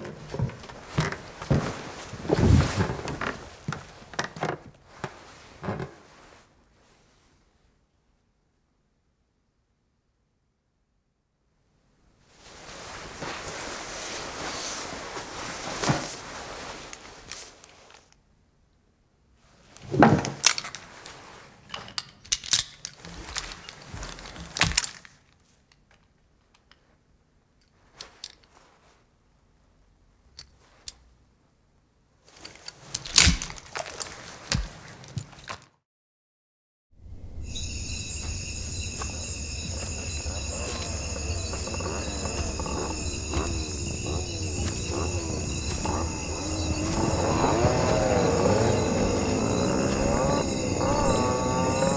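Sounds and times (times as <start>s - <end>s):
rustling: 0.0s - 6.4s, 37.2s - 51.9s
low rumble: 37.0s - 51.9s
crickets trilling: 37.2s - 51.9s.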